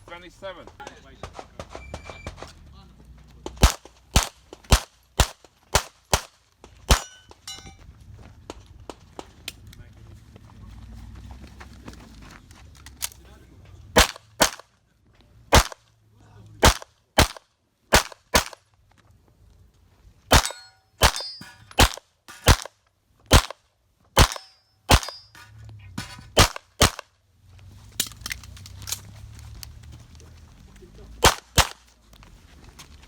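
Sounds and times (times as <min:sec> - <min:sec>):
pistol shots: 0:03.6 - 0:07.3, 0:14.0 - 0:14.7, 0:15.5 - 0:15.8, 0:16.6 - 0:18.6, 0:20.3 - 0:23.6, 0:24.2 - 0:25.4, 0:26.0 - 0:27.1, 0:31.2 - 0:31.9
metallic ringing: 0:07.0 - 0:07.8, 0:20.4 - 0:22.5, 0:24.3 - 0:26.4.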